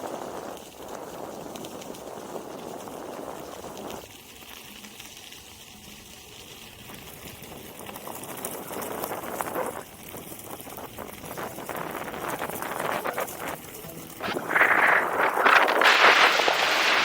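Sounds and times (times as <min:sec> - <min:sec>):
wind buffeting microphone: 0:00.0 - 0:04.0, 0:06.9 - 0:17.0.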